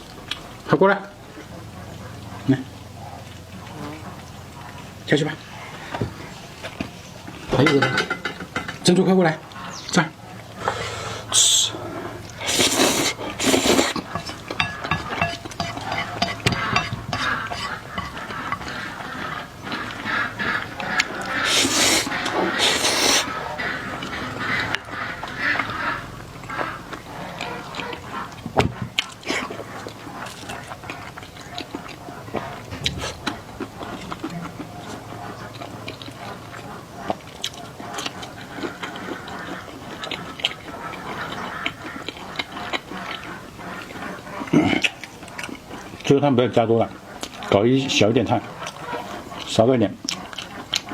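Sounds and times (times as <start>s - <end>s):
utensils clinking against a bowl: 7.5s - 9.1s, 12.4s - 20.0s
chewing and biting food: 9.5s - 50.9s.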